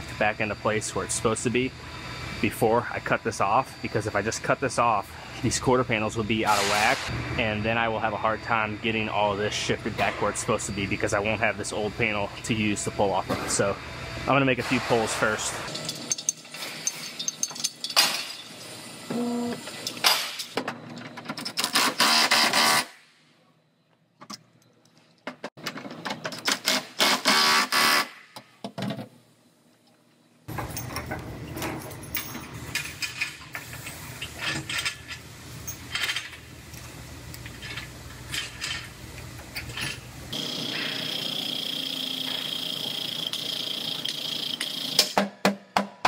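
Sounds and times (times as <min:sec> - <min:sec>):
metal clanks and rattles: 0:15.2 - 0:18.5.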